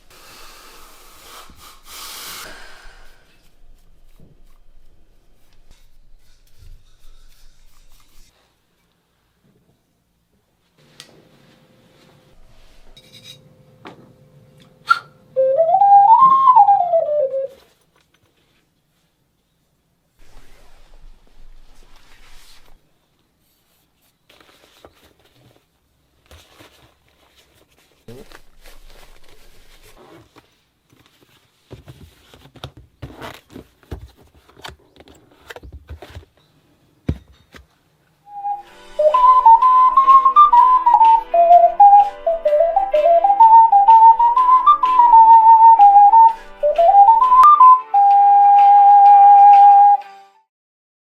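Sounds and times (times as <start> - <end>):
ocarina playing a scale: 14.9 - 17.6, 38.3 - 50.5.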